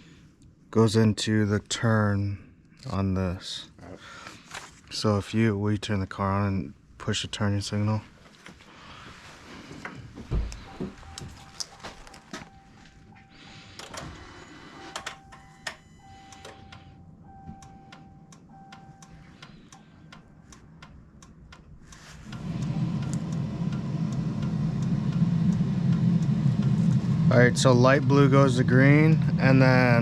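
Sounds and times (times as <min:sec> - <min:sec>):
faint chime tone: 0:10.6 - 0:19.4
truck engine idling: 0:22.3 - 0:30.0.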